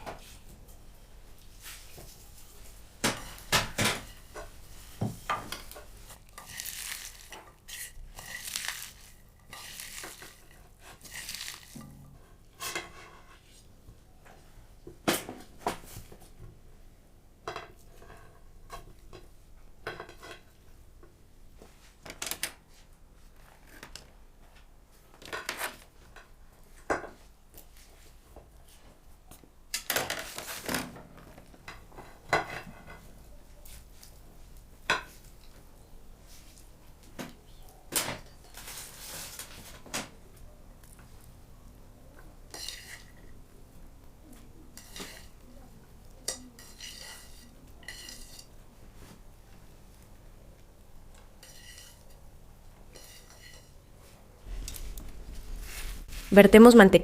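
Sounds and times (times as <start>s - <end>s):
dishes scraping: 3.0s - 13.4s, 42.5s - 43.4s, 44.8s - 45.4s, 46.2s - 48.6s, 51.4s - 52.3s, 52.9s - 53.8s
dishes and utensils clinking: 44.8s - 45.4s, 46.2s - 48.5s, 52.9s - 53.8s.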